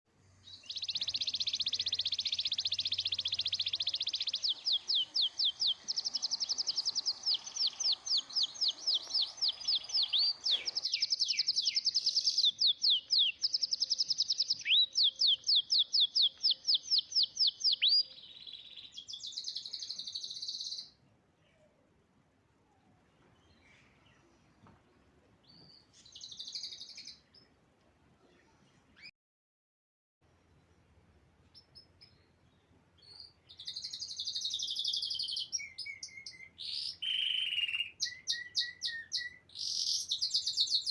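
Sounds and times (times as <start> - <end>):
songbird singing in trills: 0.2 - 21.8, 22.7 - 27.6, 30.6 - 40.9.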